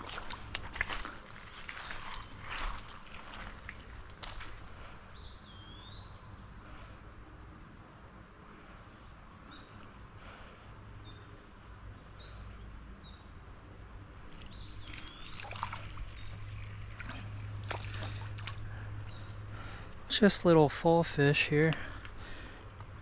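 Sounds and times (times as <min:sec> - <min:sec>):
water splashing: 0:00.0 - 0:05.0, 0:14.2 - 0:20.4
bird chirping: 0:05.1 - 0:07.0, 0:14.3 - 0:23.0.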